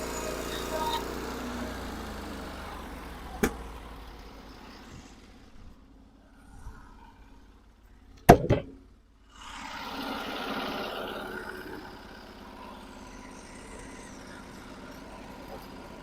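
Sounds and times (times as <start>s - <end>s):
sawmill engine running: 0.0s - 5.8s, 9.4s - 16.0s
loud double clunk: 8.3s - 8.9s
rushing mechanical noise: 9.3s - 16.0s.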